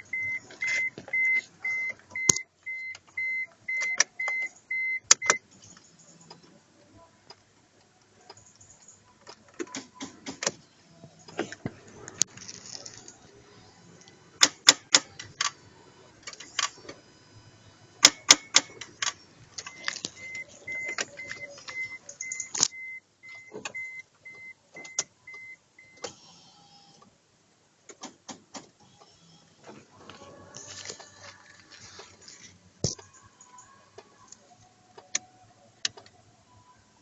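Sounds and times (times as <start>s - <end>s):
car warning chime beeps: 0.0s - 6.6s, 12.9s - 26.2s.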